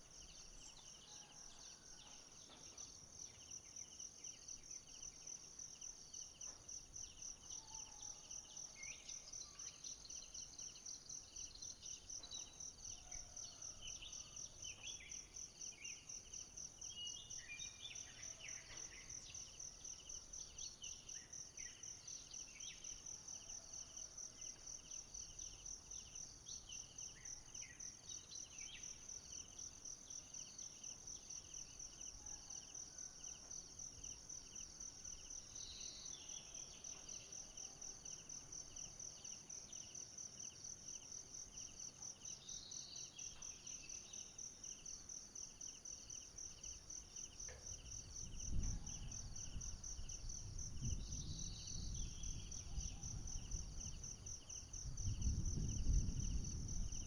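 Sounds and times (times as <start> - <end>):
insects pulsing trill: 0.0 - 57.0.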